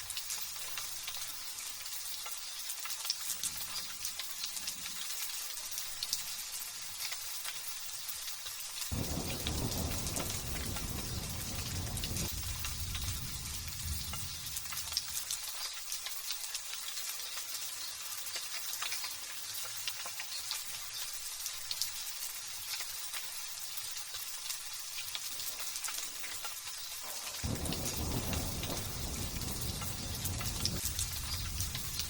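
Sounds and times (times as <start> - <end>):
light drizzle pattering: 0.0 - 32.0
low rumble: 8.9 - 14.9, 27.4 - 32.0.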